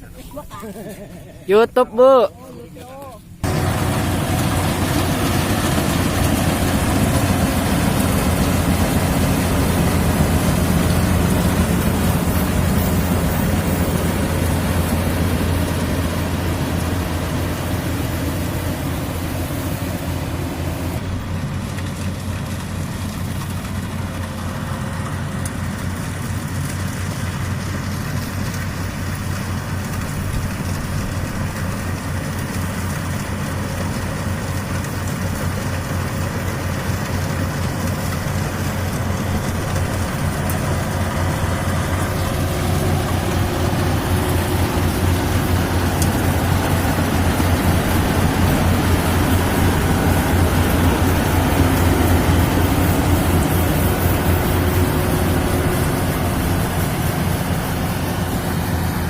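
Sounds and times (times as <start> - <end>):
combine harvester engine humming: 0.0 - 59.0
harvesting machinery whirring: 1.7 - 59.0.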